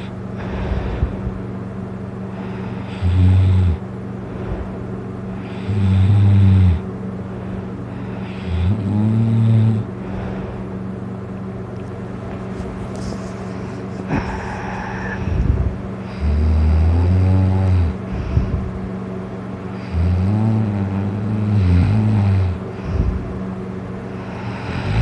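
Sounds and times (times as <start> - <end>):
steady low hum: 0.0 - 25.0
man snoring loudly: 2.4 - 3.8, 5.4 - 6.9, 8.1 - 9.9, 14.1 - 18.5, 19.8 - 23.1, 24.1 - 25.0.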